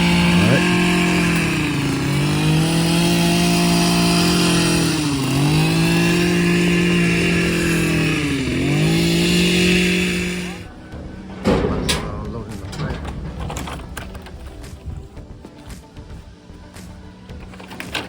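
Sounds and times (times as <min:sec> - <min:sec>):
gasoline engine running: 0:00.0 - 0:18.0.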